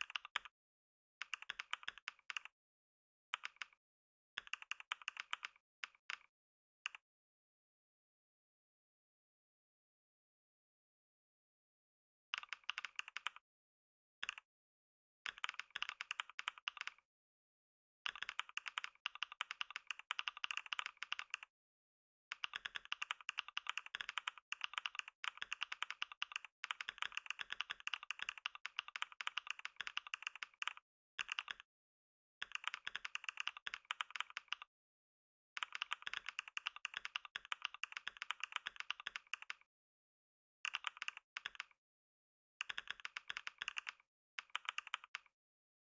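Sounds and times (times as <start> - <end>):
rapid keyboard typing: 0.0 - 0.5, 1.2 - 2.5, 3.4 - 3.8, 4.4 - 6.3, 12.4 - 13.4, 14.2 - 14.4, 15.3 - 17.0, 18.1 - 21.5, 22.3 - 31.7, 32.4 - 34.7, 35.6 - 39.7, 40.6 - 41.8, 42.6 - 45.3.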